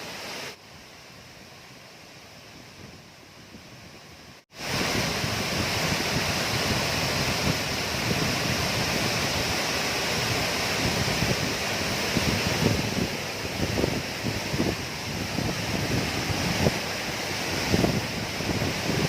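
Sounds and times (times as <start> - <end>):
waterfall rushing: 0.0 - 0.6, 4.5 - 19.0.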